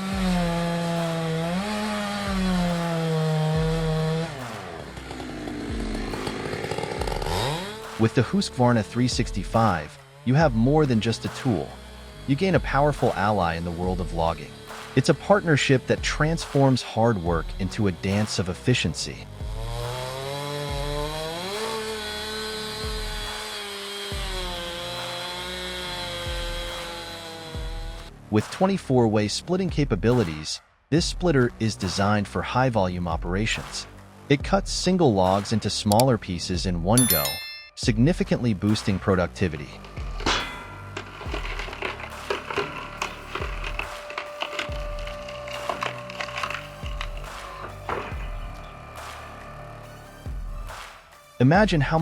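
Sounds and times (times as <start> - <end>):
chainsaw cutting wood: 0.0 - 28.3, 38.7 - 52.0.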